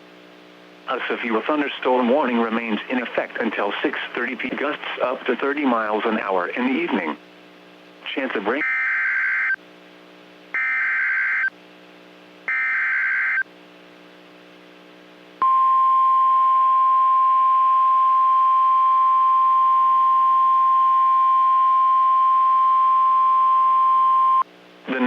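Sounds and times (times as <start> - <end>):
steady warning alarm tone: 8.6 - 9.6, 10.6 - 11.5, 12.5 - 13.4.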